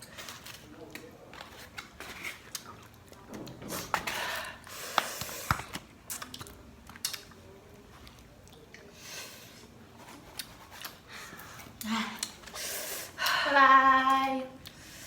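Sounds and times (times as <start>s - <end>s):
crunching and chewing: 0.0s - 4.2s, 4.9s - 9.0s.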